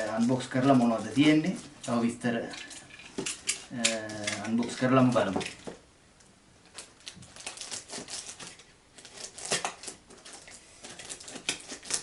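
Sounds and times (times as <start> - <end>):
packaging crinkling and rustling: 6.7 - 12.0.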